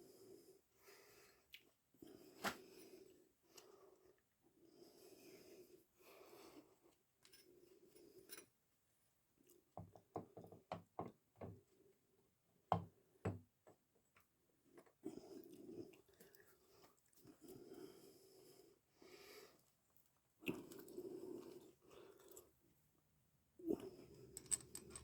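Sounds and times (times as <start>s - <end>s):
small metal parts clicking: 24.3s - 25.0s.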